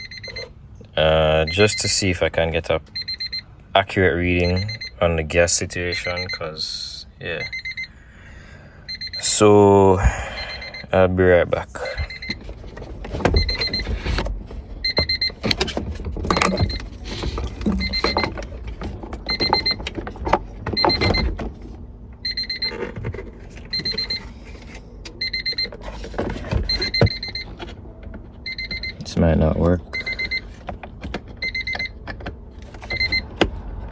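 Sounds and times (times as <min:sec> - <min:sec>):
hands handling parts: 0:12.2 - 0:33.9.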